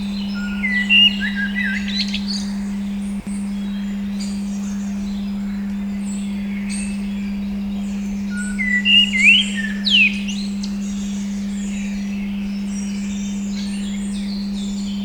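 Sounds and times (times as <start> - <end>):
steady pure tone: 0.0 - 15.0
bird whistles: 0.2 - 2.5, 8.3 - 10.6.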